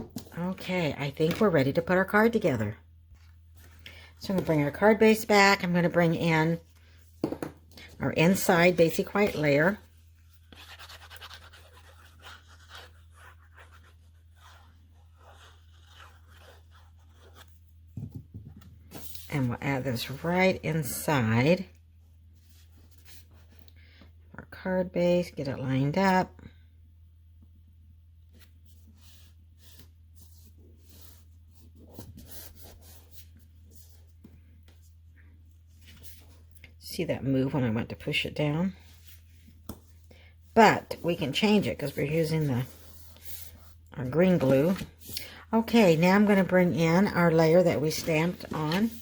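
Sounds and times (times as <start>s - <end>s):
cardstock rubbing and rustling: 8.3s - 17.7s, 40.9s - 49.0s
cardstock rustling and scraping: 40.9s - 49.0s.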